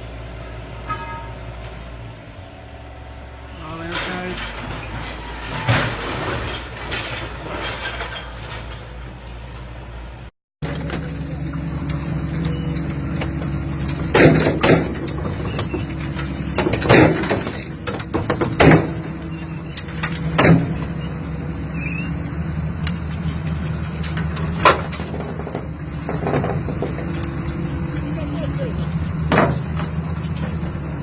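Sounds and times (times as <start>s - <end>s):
excavator engine running: 0.0s - 31.0s
loud knocks from machine: 14.0s - 15.4s, 16.6s - 19.1s.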